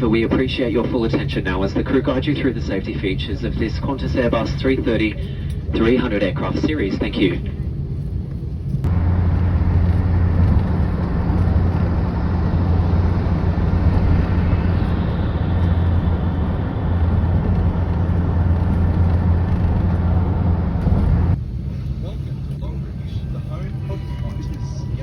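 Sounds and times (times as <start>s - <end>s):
low engine drone: 0.0s - 25.0s
rushing noise: 8.8s - 21.7s.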